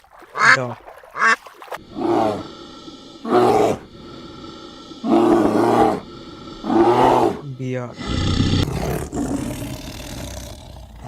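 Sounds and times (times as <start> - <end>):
bear giving deep calls: 1.2 - 9.5.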